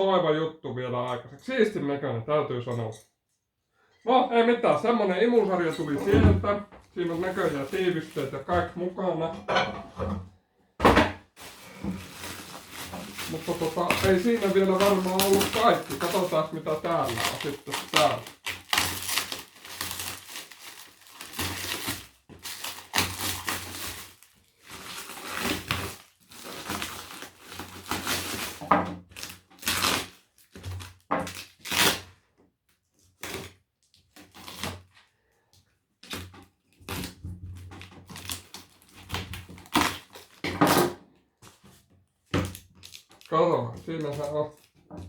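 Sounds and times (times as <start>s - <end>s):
packing material rustling: 6.8s - 8.7s, 11.2s - 32.2s, 33.0s - 35.0s, 36.0s - 40.8s, 41.4s - 45.0s.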